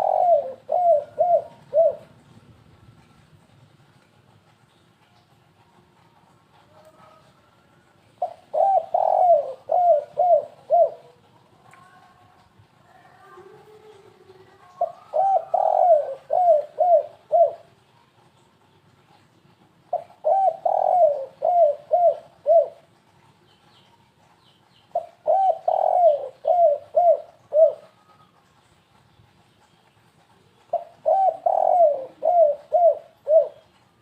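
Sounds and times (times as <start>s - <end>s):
dove cooing: 0.0s - 2.2s, 8.2s - 12.0s, 13.1s - 17.8s, 19.9s - 22.9s, 24.9s - 28.0s, 30.5s - 34.0s.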